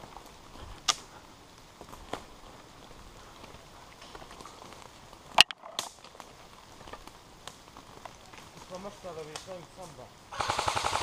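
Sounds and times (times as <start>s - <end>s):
raindrops ticking on camera and leaves: 0.0s - 11.0s
soft rain hiss: 0.0s - 11.0s.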